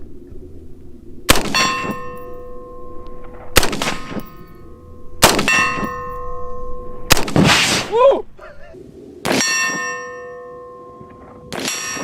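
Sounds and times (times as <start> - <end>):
steel plate target ringing: 0.0 - 8.4, 9.4 - 11.1
gunshots: 7.1 - 8.0.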